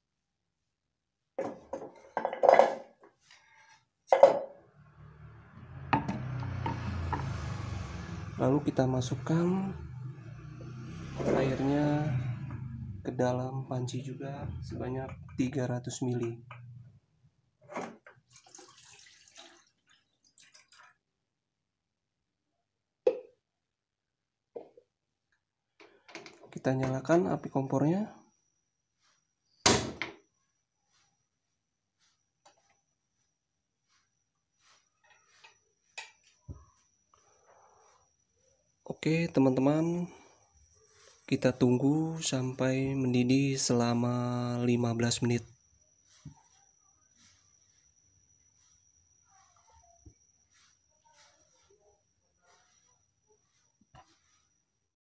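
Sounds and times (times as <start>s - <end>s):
water pouring into a pot: 18.2s - 21.2s.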